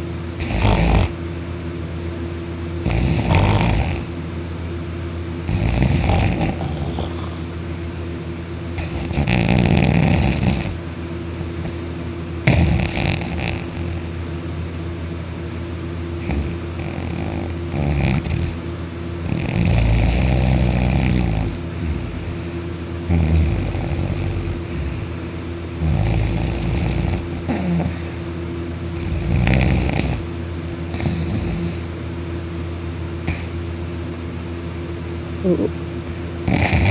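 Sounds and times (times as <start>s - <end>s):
loud snoring: 0.4s - 1.2s, 2.8s - 4.2s, 5.4s - 7.5s, 8.8s - 10.8s, 11.5s - 14.1s, 16.2s - 18.6s, 19.2s - 28.3s, 29.0s - 31.9s, 33.2s - 33.6s, 36.4s - 36.9s.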